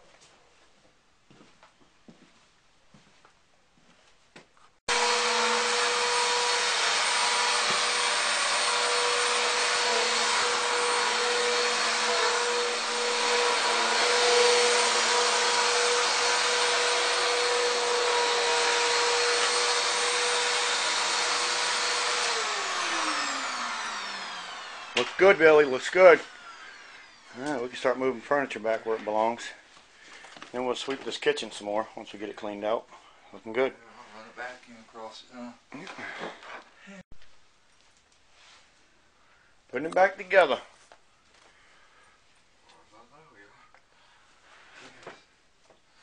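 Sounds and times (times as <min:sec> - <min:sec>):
vacuum cleaner motor whining: 0:04.9 - 0:29.1.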